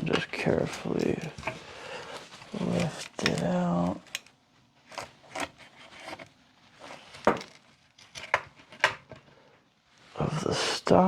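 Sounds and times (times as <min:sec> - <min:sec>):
rifle scraping in wooden stock: 0:04.8 - 0:08.9.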